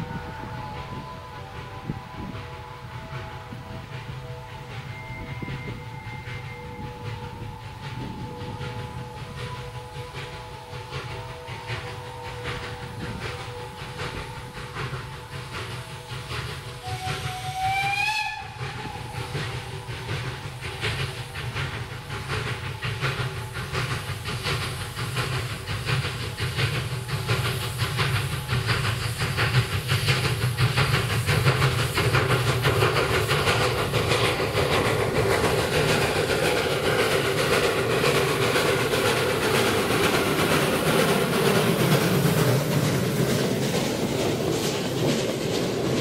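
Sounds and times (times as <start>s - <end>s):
steam hissing: 0.0s - 46.0s
steam train passing: 0.0s - 46.0s
wheels clacking over rail joints: 18.9s - 46.0s.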